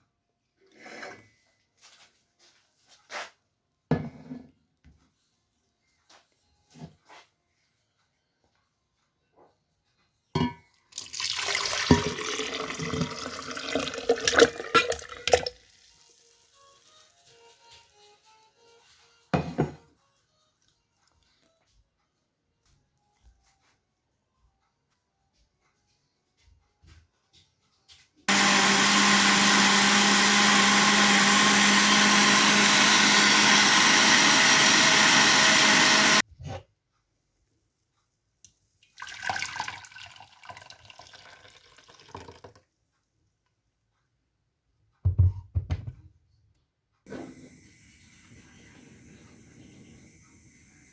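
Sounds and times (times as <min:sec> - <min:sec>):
soft background music: 0:04.9 - 0:13.7, 0:15.5 - 0:28.3
water pouring: 0:10.9 - 0:15.9, 0:38.8 - 0:42.6
electric blender running: 0:28.3 - 0:36.2
knock: 0:45.0 - 0:46.1.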